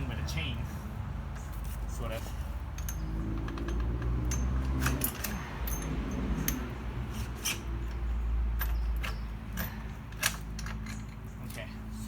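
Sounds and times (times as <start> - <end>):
light metal clicks and clinks: 2.6 - 6.8.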